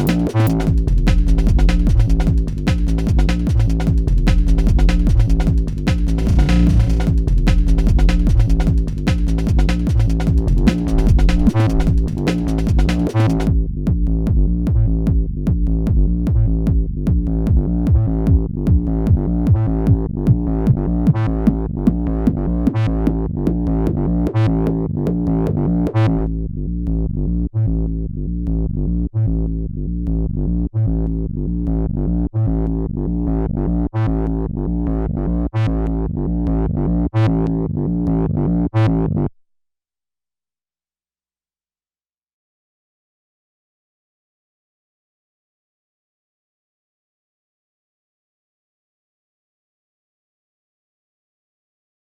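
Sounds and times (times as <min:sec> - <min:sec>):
electronic acid music: 0:00.0 - 0:13.5.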